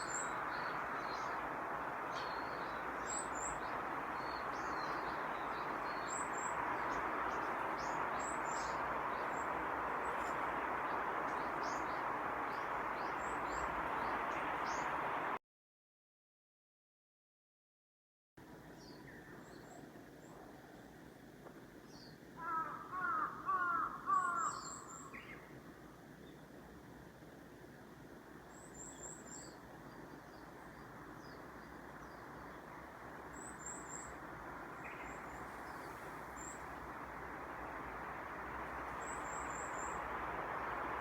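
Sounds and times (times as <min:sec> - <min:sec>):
steady background hiss: 0:00.0 - 0:15.4, 0:18.4 - 0:41.0
harsh bird calls: 0:22.4 - 0:25.4.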